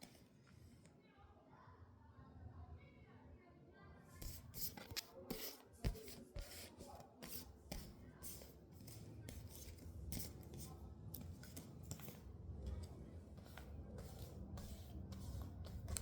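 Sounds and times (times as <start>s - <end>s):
cards being shuffled: 4.2s - 16.0s.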